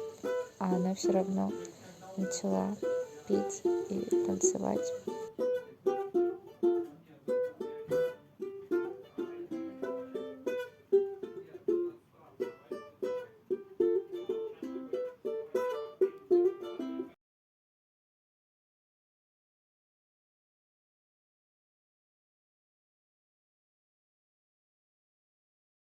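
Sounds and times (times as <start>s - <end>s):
plucked string instrument melody: 0.0s - 17.2s.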